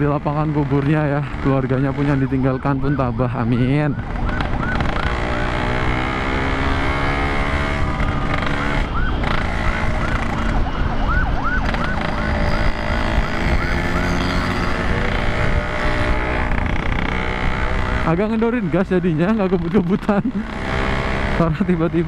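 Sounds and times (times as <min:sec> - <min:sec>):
ambulance siren yelping: 0:01.6 - 0:05.9, 0:07.6 - 0:16.0
motorcycle engine running: 0:03.6 - 0:22.0.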